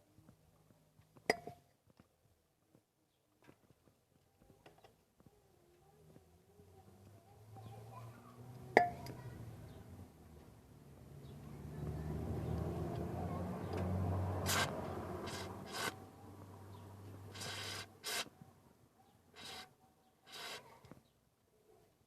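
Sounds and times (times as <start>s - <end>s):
low rubbing and scraping: 11.2s - 16.0s, 17.2s - 18.3s, 19.4s - 19.7s
aerosol spray hissing: 14.4s - 16.0s, 17.3s - 18.3s, 19.4s - 19.7s, 20.3s - 20.7s.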